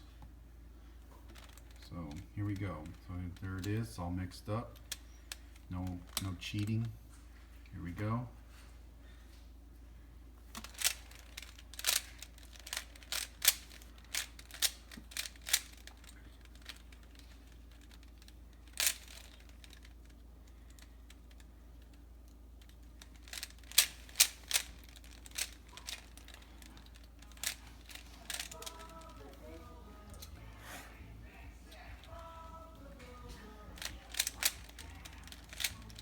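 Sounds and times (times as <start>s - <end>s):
plastic puzzle cube clicking: 10.6s - 20.0s, 22.6s - 30.3s, 33.0s - 36.0s.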